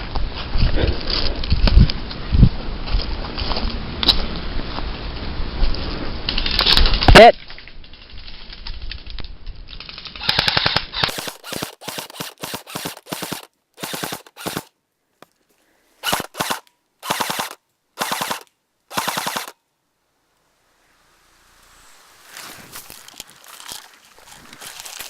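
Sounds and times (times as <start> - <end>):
gunfire rattle: 10.2 - 14.7, 16.0 - 19.6
automatic gunfire bursts: 10.3 - 14.7, 16.0 - 19.6.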